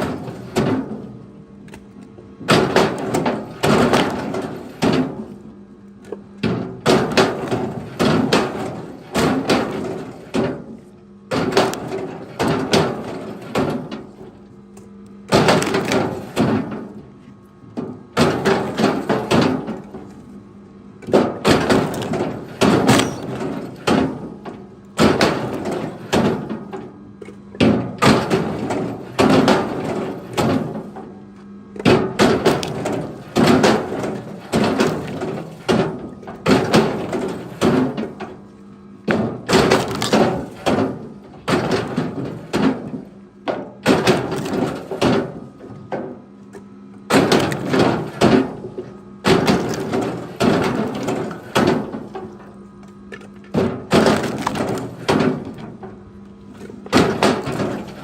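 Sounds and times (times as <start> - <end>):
steady low hum: 0.0 - 58.0
firewood thrown onto pile: 15.3 - 16.9, 21.1 - 26.8, 31.8 - 38.2, 39.1 - 43.0, 43.8 - 46.2, 47.1 - 52.4, 53.2 - 58.0.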